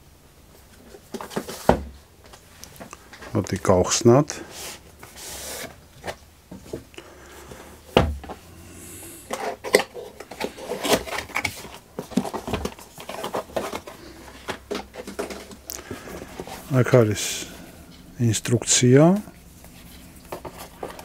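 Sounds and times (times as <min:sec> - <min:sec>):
packaging rustling: 0:09.3 - 0:17.0, 0:19.0 - 0:21.0.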